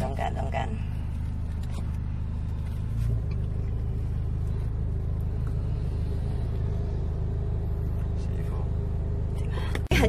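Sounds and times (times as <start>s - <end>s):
car engine idling: 0.0s - 10.0s.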